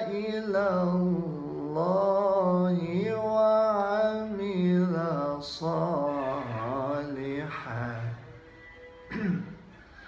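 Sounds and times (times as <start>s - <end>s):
man chanting melodically: 0.0s - 8.5s
man breathing: 9.6s - 10.0s.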